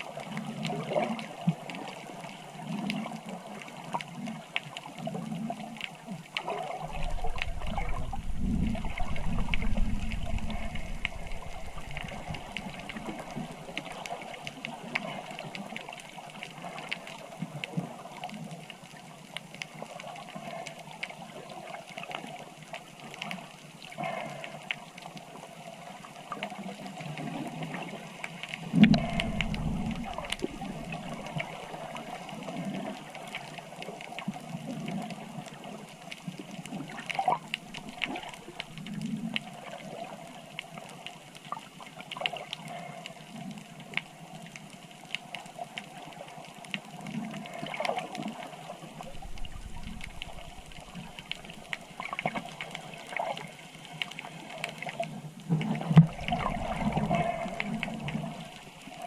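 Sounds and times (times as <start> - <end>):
rushing trickling water: 0.0 - 24.6, 25.3 - 59.0
deep low rumble: 6.8 - 13.7, 28.8 - 31.4, 49.1 - 51.6.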